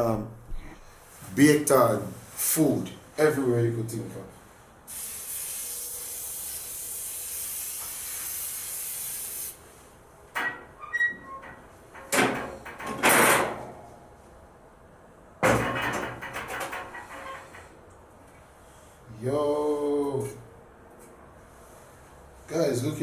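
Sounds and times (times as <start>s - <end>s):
aerosol spray hissing: 4.9s - 9.6s
metal grill parts clattering: 10.4s - 14.0s, 15.4s - 17.8s.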